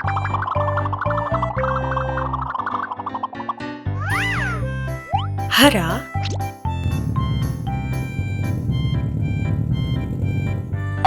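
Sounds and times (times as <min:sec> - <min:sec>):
bouncy children's music: 0:04.1 - 0:06.1.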